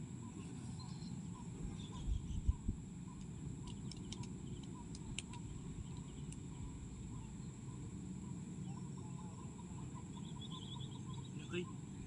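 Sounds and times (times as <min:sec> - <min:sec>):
low steady rumble: 0:00.0 - 0:12.0
small chirping calls: 0:00.2 - 0:12.0
light clicks: 0:03.2 - 0:06.4.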